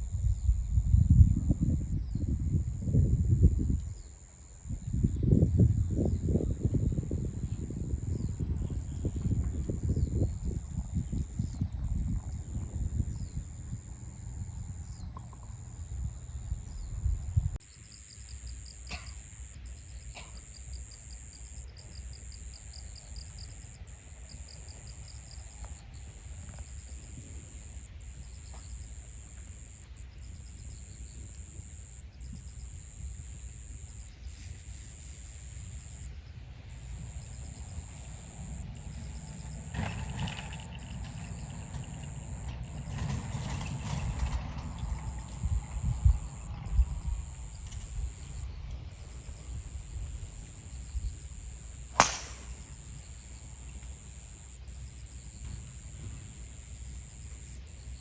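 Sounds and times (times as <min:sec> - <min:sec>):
low wind rumble: 0:00.0 - 0:17.7, 0:35.1 - 0:58.0
high insect trill: 0:00.0 - 0:58.0.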